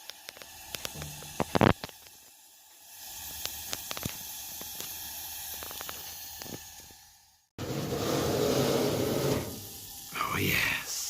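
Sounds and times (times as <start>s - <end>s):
gas burner hissing: 0.0s - 11.0s.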